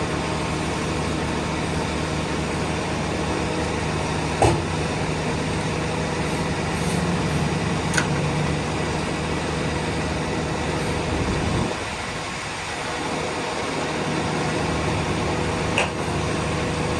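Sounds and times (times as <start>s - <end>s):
truck engine running: 0.0s - 16.9s.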